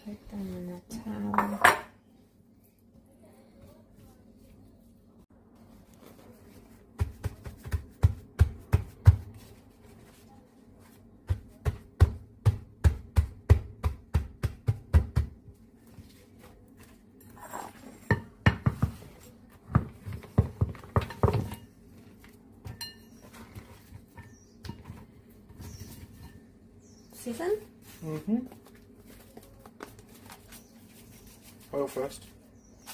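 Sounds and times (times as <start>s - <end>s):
dishes and utensils clinking: 1.2s - 2.0s, 17.2s - 18.8s, 22.6s - 25.1s.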